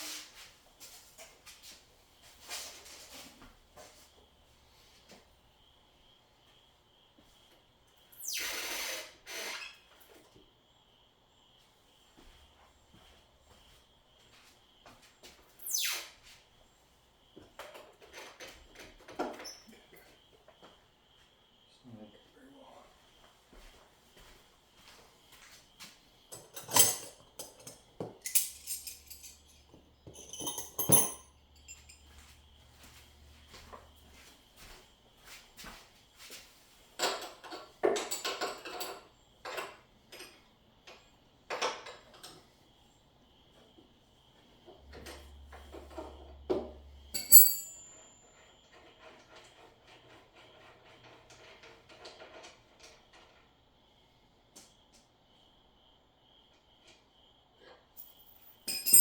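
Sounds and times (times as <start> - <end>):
objects knocking and rustling: 26.3 - 32.3
sharp high-pitched clink: 47.2 - 48.1, 58.7 - 59.0.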